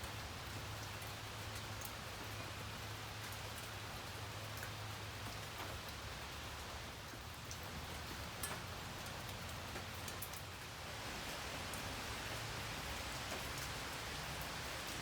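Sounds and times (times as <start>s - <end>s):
rain falling: 0.0s - 15.0s
raindrops ticking: 0.1s - 15.0s.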